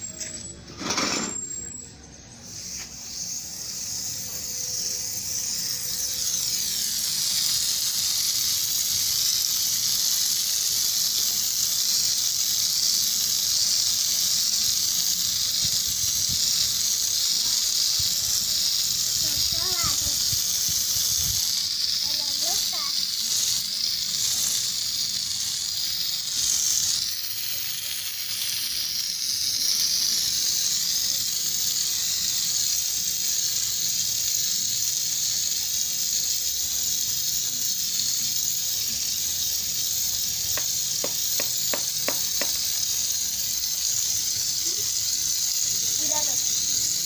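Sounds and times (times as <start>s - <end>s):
compressed air hissing: 0.0s - 47.0s
quick ticks: 40.4s - 47.0s.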